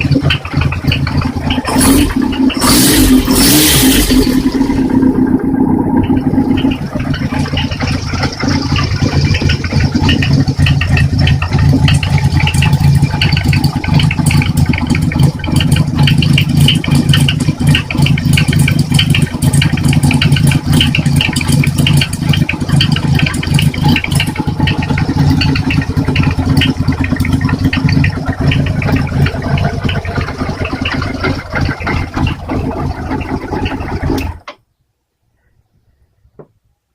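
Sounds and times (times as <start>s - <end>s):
motorcycle engine running: 0.0s - 34.5s.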